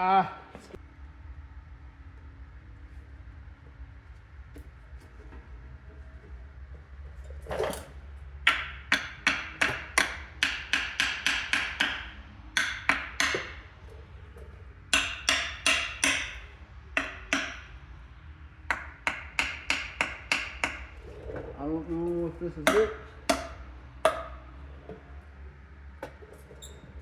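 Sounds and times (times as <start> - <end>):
hammer tapping: 8.5 - 13.6, 14.9 - 16.4, 17.0 - 17.7, 18.7 - 20.9, 22.6 - 24.4.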